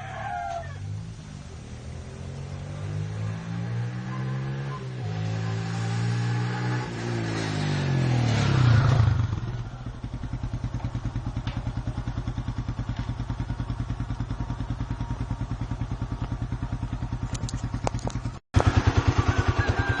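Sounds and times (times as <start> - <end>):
motorcycle passing by: 0.0 - 20.0.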